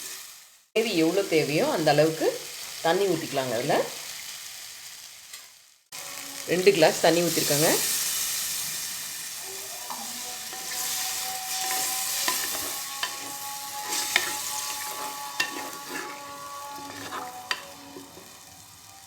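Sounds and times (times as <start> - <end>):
gravy sizzling in a pan: 0.0 - 19.0
spoon stirring and clinking: 9.9 - 18.4.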